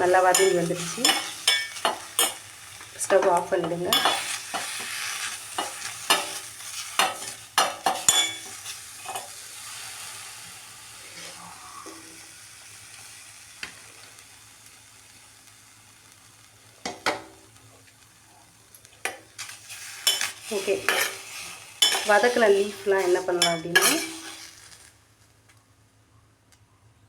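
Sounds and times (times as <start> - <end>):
leaves sizzling in a pan: 0.0 - 25.6
spatula scraping and tapping pan: 0.3 - 2.4, 3.0 - 9.3, 19.0 - 24.8.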